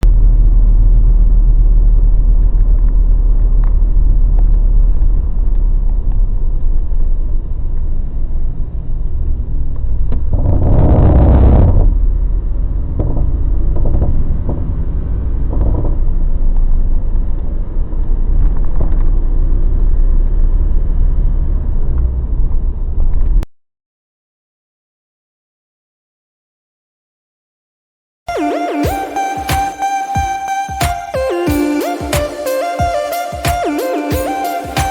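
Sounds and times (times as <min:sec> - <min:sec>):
truck engine rumbling: 0:00.0 - 0:23.1.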